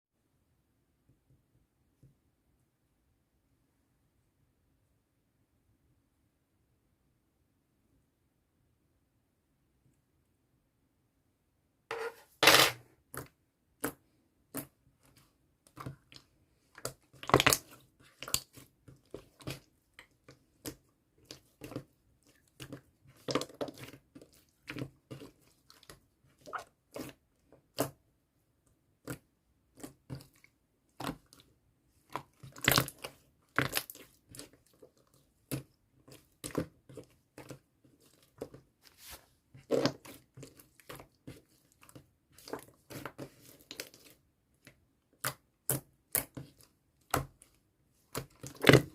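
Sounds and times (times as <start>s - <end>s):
slime crackling and squishing: 13.1s - 28.1s, 28.8s - 48.9s.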